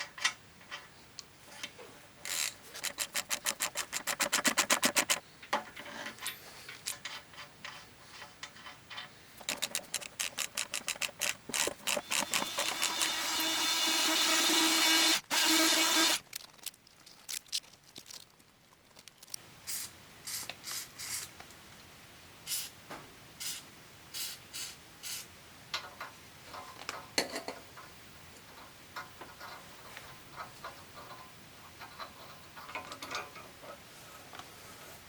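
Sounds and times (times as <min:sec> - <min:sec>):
tools tapping and clicking: 0:02.3 - 0:07.8, 0:08.4 - 0:13.4
workshop tool humming: 0:09.4 - 0:16.2.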